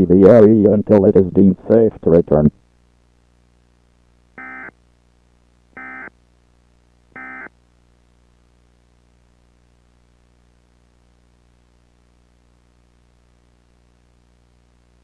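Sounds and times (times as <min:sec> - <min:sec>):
buzzy digital data tones: 0:04.4 - 0:04.8, 0:05.8 - 0:06.1, 0:07.2 - 0:07.5.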